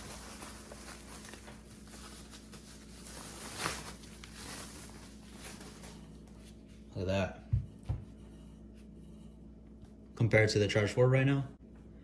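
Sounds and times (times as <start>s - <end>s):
packaging rustle: 0.0s - 6.5s
packaging handling noise: 0.0s - 6.6s.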